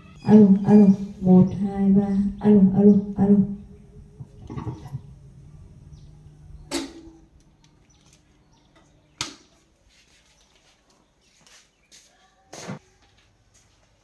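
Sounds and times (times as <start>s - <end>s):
low amplifier hum: 0.0s - 9.2s.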